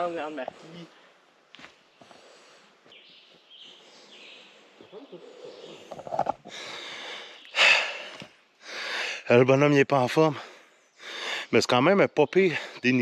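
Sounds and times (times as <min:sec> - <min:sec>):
person breathing hard: 0:06.4 - 0:09.3, 0:10.5 - 0:11.5.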